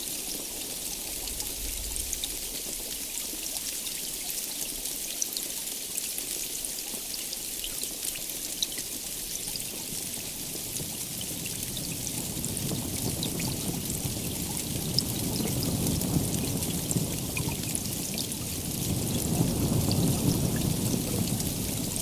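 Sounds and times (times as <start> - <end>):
heavy rain: 0.0 - 3.7, 9.1 - 22.0
distant thunder rumble: 1.2 - 2.7, 10.8 - 22.0.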